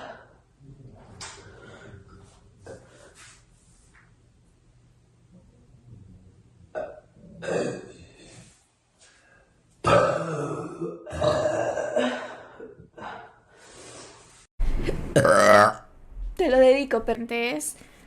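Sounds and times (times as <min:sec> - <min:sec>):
girl burping: 0:09.8 - 0:12.2, 0:15.2 - 0:15.9.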